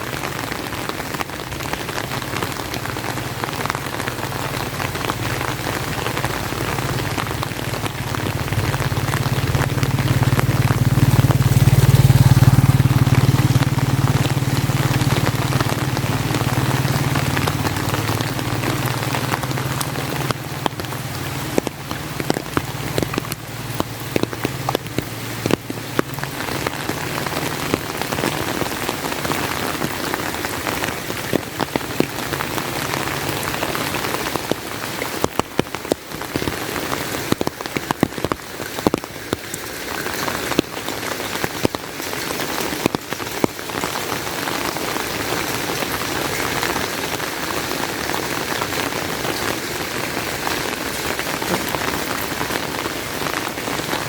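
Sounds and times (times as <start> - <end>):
rain on an umbrella: 0.0 - 54.0
steady rain: 0.0 - 54.0
low rumble: 3.7 - 28.1.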